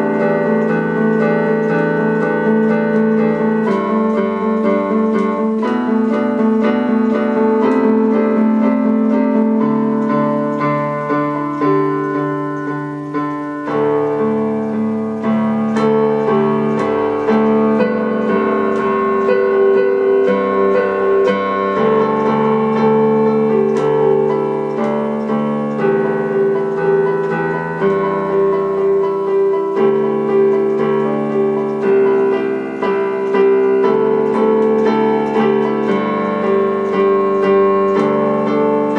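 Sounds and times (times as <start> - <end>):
piano music: 0.0 - 38.9.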